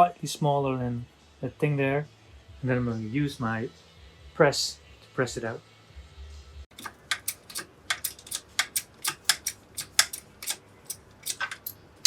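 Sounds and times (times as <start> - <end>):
shop press clicking: 6.7 - 11.8.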